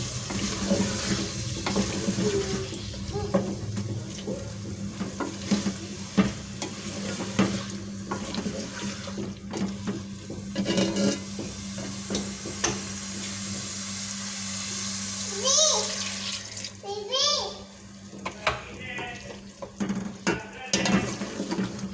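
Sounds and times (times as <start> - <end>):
frying sizzle: 0.0 - 21.9
spoon scraping cooking pot: 4.3 - 11.6.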